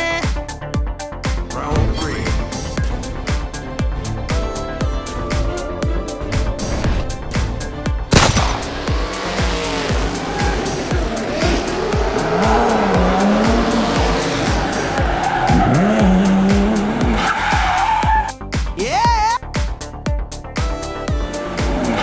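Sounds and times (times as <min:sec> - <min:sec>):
background music with beat: 0:00.0 - 0:22.0
race car engines revving: 0:08.5 - 0:18.3, 0:21.2 - 0:22.0.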